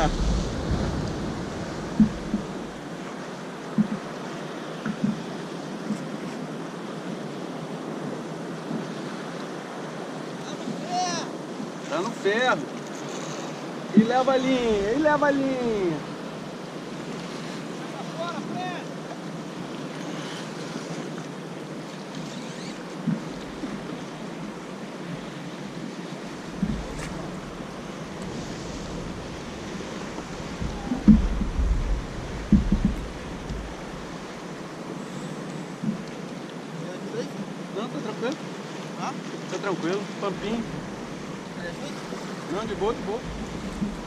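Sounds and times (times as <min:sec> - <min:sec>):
wind buffeting microphone: 0:00.0 - 0:03.0, 0:25.7 - 0:34.8, 0:40.4 - 0:44.0
water washing around kayak: 0:00.0 - 0:44.0
soft knocks against hull: 0:01.8 - 0:02.8, 0:03.7 - 0:04.1, 0:04.8 - 0:06.0, 0:23.0 - 0:23.9, 0:26.4 - 0:34.5, 0:35.8 - 0:36.2, 0:43.1 - 0:44.0
short knock: 0:30.6 - 0:33.8.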